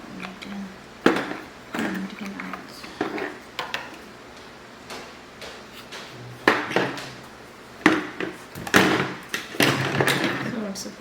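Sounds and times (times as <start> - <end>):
hard parts knocking and clattering: 7.8 - 10.6.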